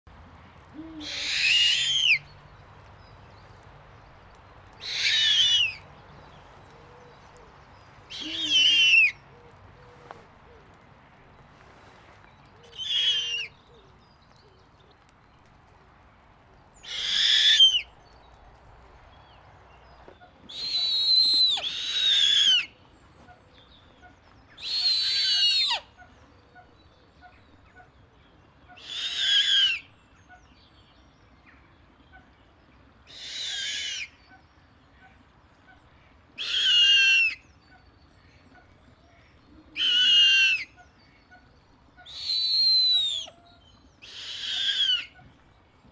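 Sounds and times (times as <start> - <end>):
owl screeching: 1.0 - 2.2, 4.8 - 5.8, 8.1 - 9.2, 12.7 - 13.5, 16.8 - 17.9, 20.5 - 22.7, 24.6 - 25.9, 28.8 - 29.9, 33.1 - 34.1, 36.4 - 37.4, 39.8 - 40.8, 42.0 - 43.4, 44.0 - 45.2.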